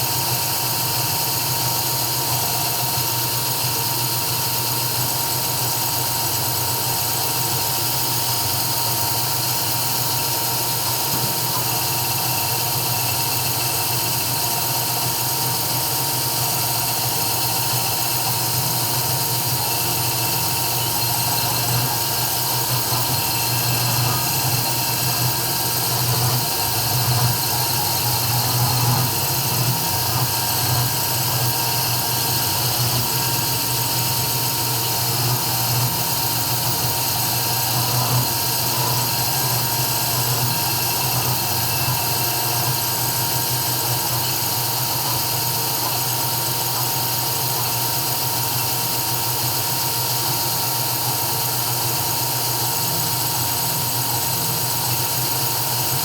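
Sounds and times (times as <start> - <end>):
router spindle whine and hiss: 0.0 - 56.0.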